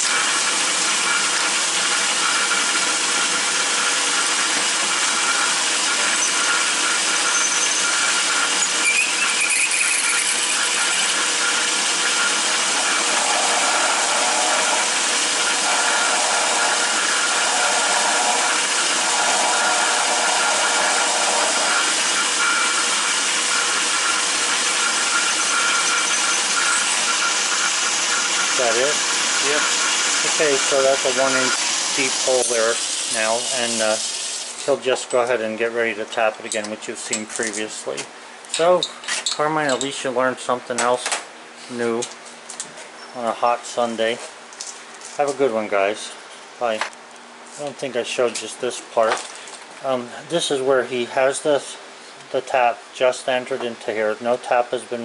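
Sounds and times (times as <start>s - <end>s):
drill bit boring into steel: 0.0s - 34.6s
metal lathe running: 0.0s - 34.7s
cutting bit squealing: 6.0s - 31.6s.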